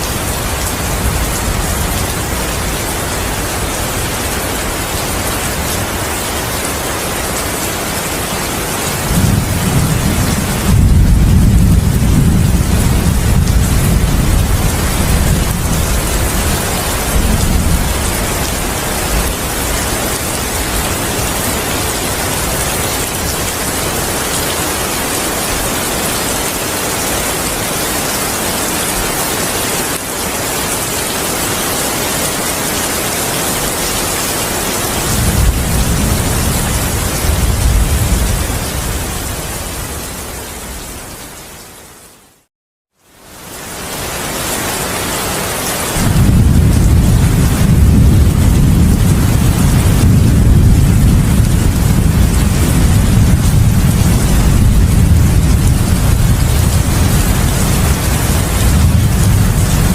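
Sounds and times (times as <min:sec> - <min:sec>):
heavy rain: 0:00.0 - 0:59.9
thunder rumbling: 0:08.6 - 0:24.4, 0:34.8 - 0:40.9, 0:46.0 - 0:59.9.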